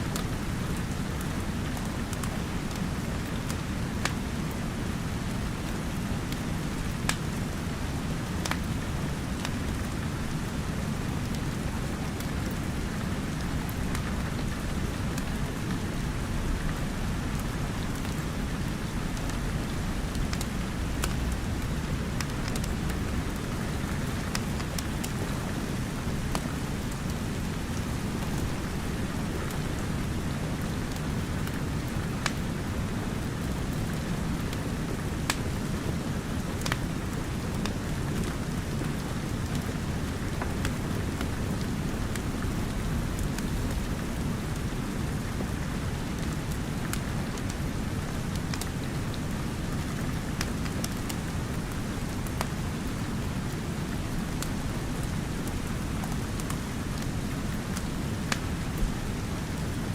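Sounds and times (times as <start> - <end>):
steady rain: 0.0 - 59.9
wood fire crackling: 0.1 - 59.9.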